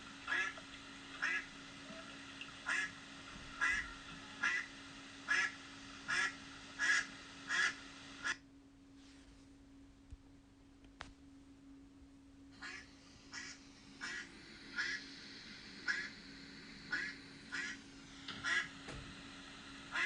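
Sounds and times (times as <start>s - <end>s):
faint steady hum: 0.0s - 20.0s
duck quacking: 2.7s - 2.9s, 3.6s - 4.7s, 5.3s - 5.5s, 6.1s - 8.4s, 12.6s - 15.0s, 15.8s - 16.1s, 16.9s - 17.8s, 18.4s - 18.7s.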